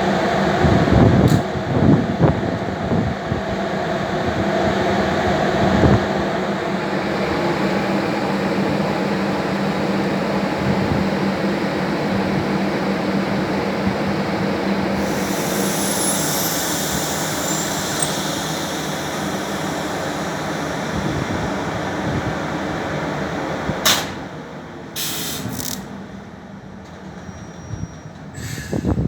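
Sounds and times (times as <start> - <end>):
train rumble and rail noise: 0.0 - 29.0
short hisses: 15.0 - 21.1, 25.0 - 25.8
faint high squeal: 15.0 - 21.5, 27.2 - 28.8
sharp click: 23.8 - 24.2.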